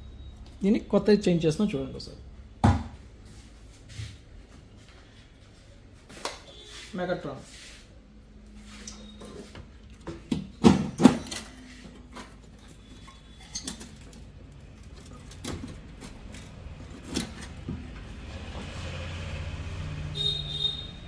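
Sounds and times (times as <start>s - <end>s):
metal parts and tools clinking: 10.9s - 17.6s.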